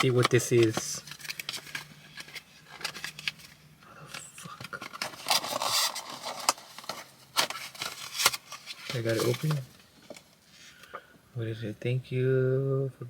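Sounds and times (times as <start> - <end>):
package clicks and scrapes: 0.0 - 10.3
package rustling: 0.0 - 10.4.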